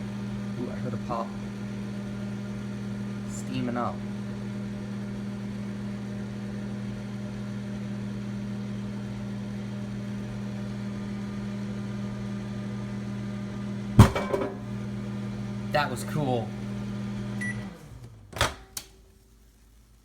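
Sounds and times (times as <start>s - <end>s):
microwave oven humming: 0.0s - 20.0s
egg exploding with loud bang: 14.0s - 14.5s.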